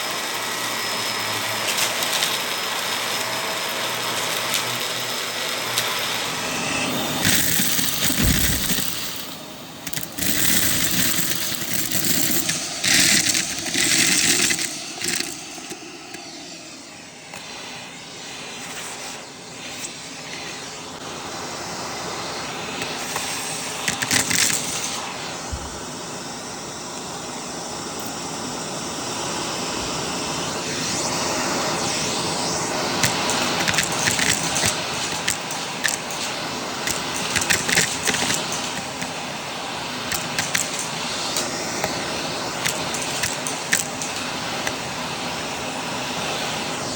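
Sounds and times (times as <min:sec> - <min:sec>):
vacuum cleaner running: 0:00.0 - 0:46.9
sharp clicks: 0:33.0 - 0:39.2, 0:40.0 - 0:42.0, 0:42.6 - 0:44.9.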